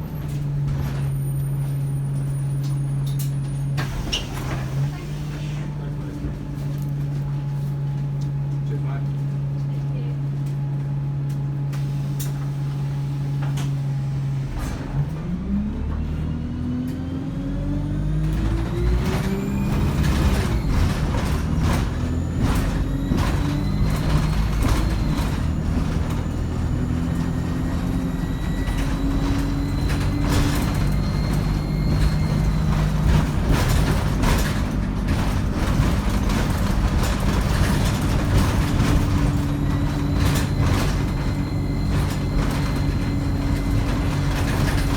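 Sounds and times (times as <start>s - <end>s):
bus engine pulling away: 0.0s - 9.6s, 10.5s - 44.9s
turbo and gearbox whine: 11.6s - 44.9s.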